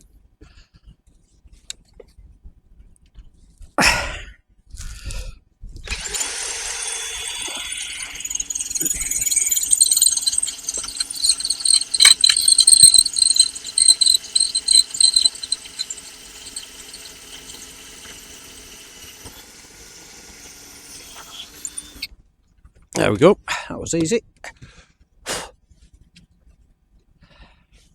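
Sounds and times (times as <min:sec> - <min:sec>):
power drill boring through steel: 0:05.9 - 0:22.1.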